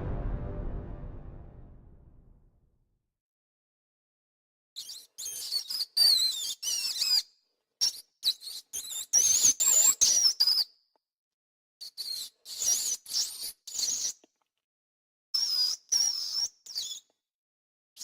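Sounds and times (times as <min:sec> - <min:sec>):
mouse squeaking: 0:04.8 - 0:07.2, 0:15.4 - 0:17.1.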